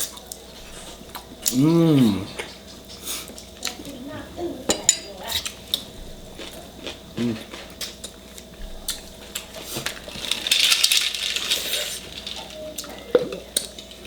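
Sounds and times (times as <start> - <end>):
utensils clinking on dishes: 4.7 - 5.8, 7.6 - 14.0.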